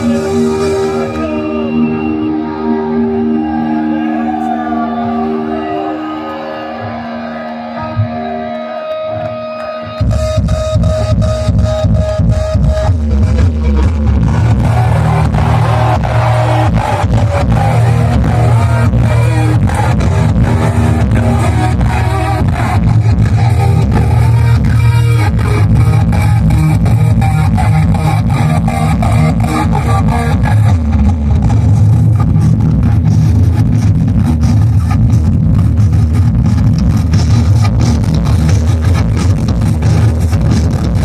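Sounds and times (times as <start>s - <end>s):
sustained electric guitar notes: 0.0s - 11.8s, 13.2s - 41.0s
live heavy metal band: 0.0s - 41.0s
fast pounding drum beat: 13.8s - 24.8s.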